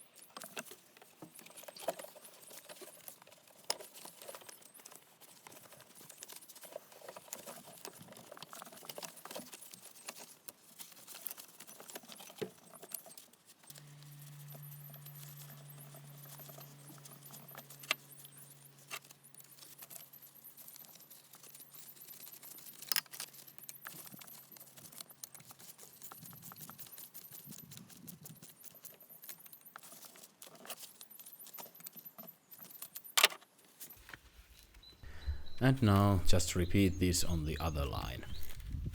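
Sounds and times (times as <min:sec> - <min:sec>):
low steady hum: 0:35.0 - 0:38.9.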